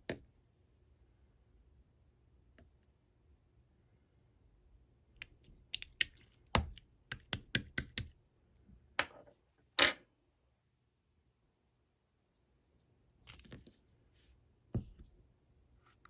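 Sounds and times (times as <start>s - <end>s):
sharp clicks and taps: 5.8s - 8.1s.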